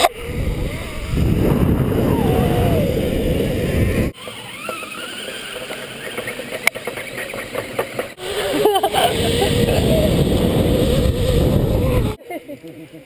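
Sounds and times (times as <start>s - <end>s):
wind rushing over microphone: 0.0s - 4.2s, 8.2s - 12.2s
pulley trolley running on cable: 2.3s - 12.2s.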